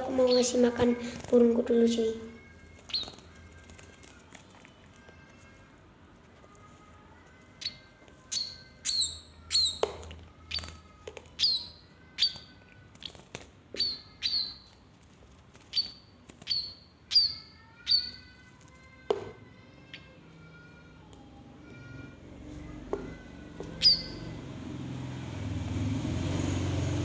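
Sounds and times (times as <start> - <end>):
bird chirping: 0.0 - 0.8, 2.0 - 3.8, 7.2 - 14.8, 15.7 - 18.4, 23.6 - 24.4.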